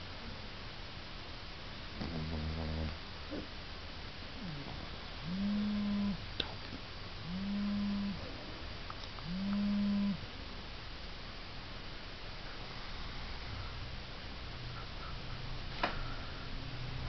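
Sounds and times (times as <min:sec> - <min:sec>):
dog snoring: 0:01.9 - 0:03.5, 0:04.4 - 0:06.2, 0:07.2 - 0:08.3, 0:09.2 - 0:10.2.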